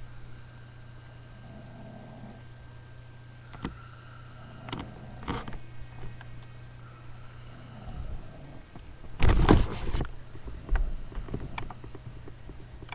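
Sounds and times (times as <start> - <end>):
steady low hum: 0.0 - 12.9
person snoring: 0.1 - 2.5, 3.4 - 5.3, 6.8 - 8.6.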